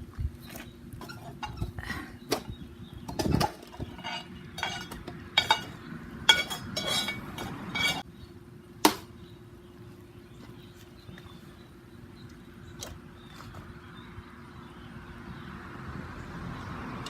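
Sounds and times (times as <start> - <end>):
cast iron pot clinking and scraping: 0.6 - 2.5, 3.1 - 8.0.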